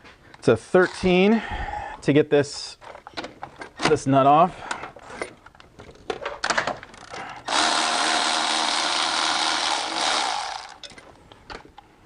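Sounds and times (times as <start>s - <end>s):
handheld power tool running: 7.5s - 10.9s.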